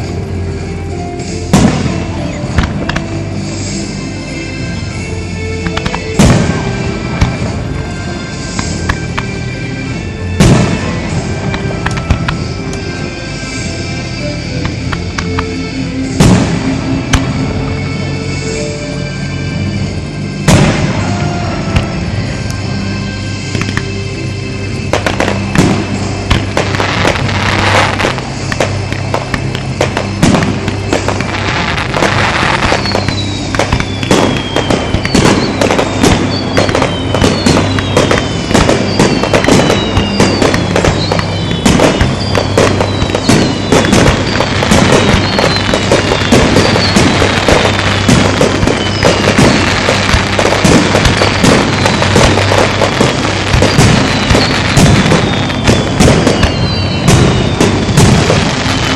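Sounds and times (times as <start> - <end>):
firework bursts and crackles: 0.0 - 18.5, 19.1 - 58.9
firework whistles falling in pitch: 5.6 - 9.4, 24.7 - 58.9.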